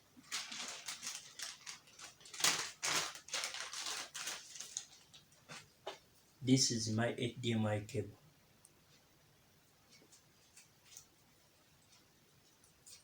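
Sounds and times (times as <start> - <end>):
scratchy rustling and handling: 0.0 - 6.0, 9.9 - 13.0.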